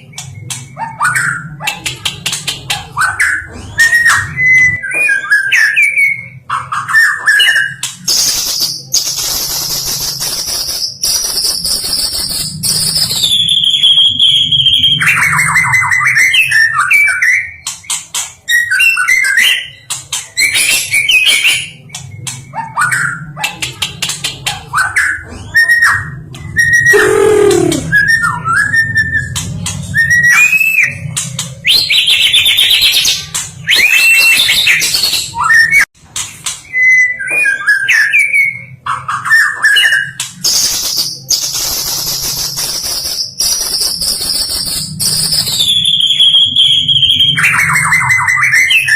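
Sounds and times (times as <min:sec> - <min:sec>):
songbird singing: 0:26.9 - 0:28.0.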